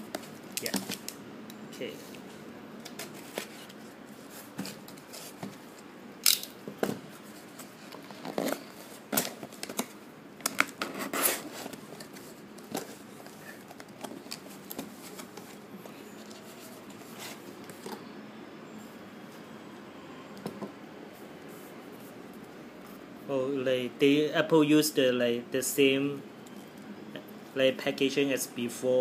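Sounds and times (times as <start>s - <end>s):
packing tape and cardboard tearing: 7.5s - 15.5s.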